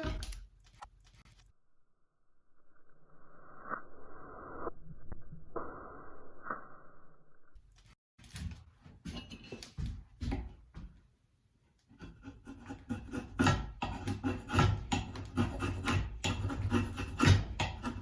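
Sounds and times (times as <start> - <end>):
hand tool shaving wood: 12.0 - 18.0.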